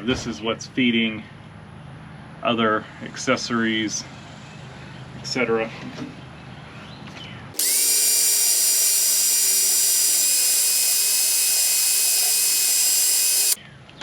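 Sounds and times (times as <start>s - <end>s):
power tool high-pitched whine: 7.6s - 13.6s.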